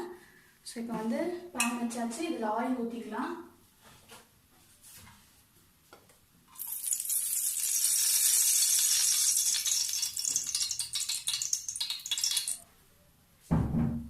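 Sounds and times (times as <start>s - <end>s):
crackles: 6.6s - 12.6s
oil sizzling in a frying pan: 6.6s - 12.6s.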